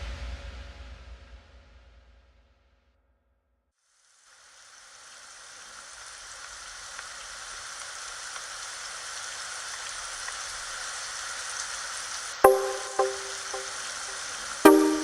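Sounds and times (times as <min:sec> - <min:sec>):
rain falling: 0:04.0 - 0:15.0.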